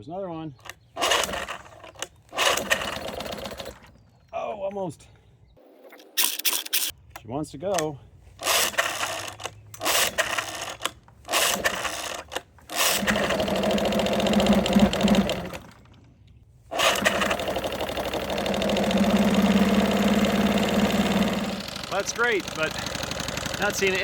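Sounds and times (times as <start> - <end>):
outboard motor pull-starting: 0.7 - 4.1, 6.0 - 6.9, 8.4 - 24.0
outboard motor running buzzy: 2.4 - 4.0, 12.7 - 16.0, 16.7 - 24.0.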